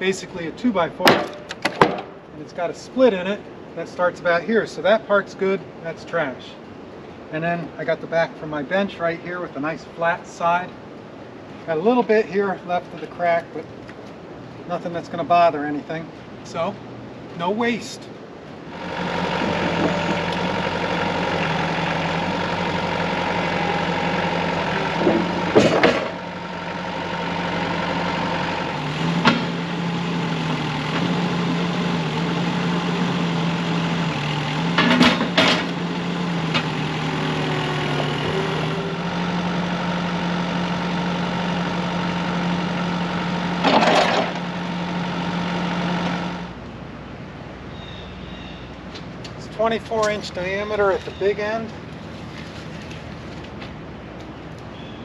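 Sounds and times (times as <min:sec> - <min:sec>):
engine running steadily: 0:00.0 - 0:55.0
short clunks: 0:01.0 - 0:02.3, 0:19.2 - 0:20.6, 0:24.4 - 0:26.6, 0:29.0 - 0:29.7, 0:34.2 - 0:36.9, 0:43.6 - 0:44.5.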